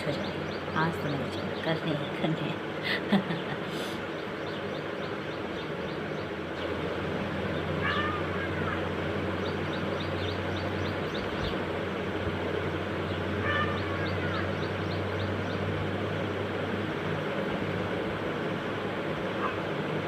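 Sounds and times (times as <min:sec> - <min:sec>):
steady low hum: 0:00.0 - 0:20.0
animal call: 0:07.6 - 0:10.4, 0:13.4 - 0:15.0.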